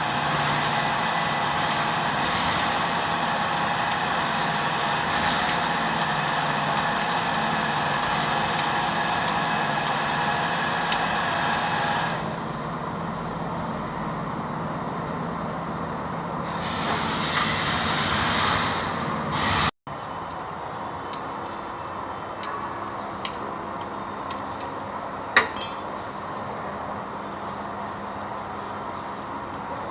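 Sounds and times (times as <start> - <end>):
diesel engine running: 0.0 - 25.3.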